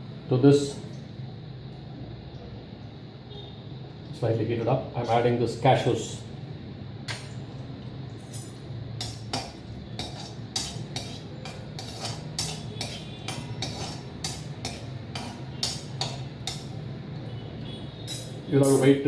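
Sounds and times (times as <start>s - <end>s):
spatula scraping a pan: 9.0s - 16.8s.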